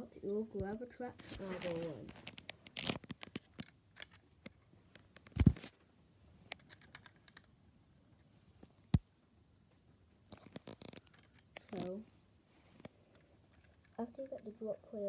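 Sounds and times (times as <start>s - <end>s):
plastic pieces clicking and knocking: 2.2s - 4.6s, 6.5s - 7.5s, 10.3s - 11.9s.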